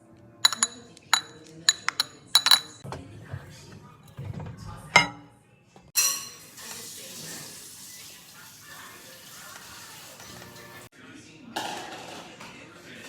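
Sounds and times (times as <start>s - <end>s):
spoon stirring batter in a mug: 0.4s - 2.9s.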